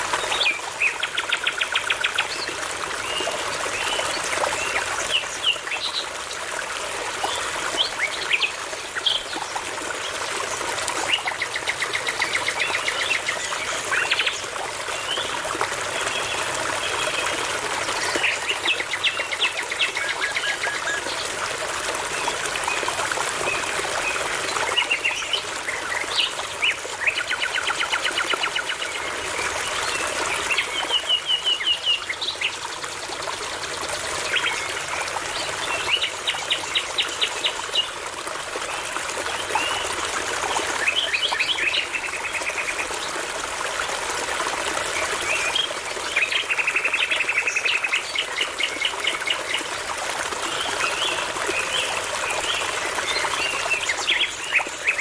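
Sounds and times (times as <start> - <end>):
brook babbling: 0.0 - 55.0.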